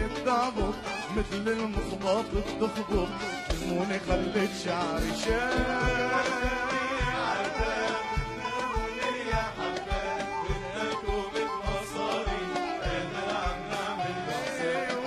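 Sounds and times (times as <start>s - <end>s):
folk song with drum beat: 0.0s - 15.0s.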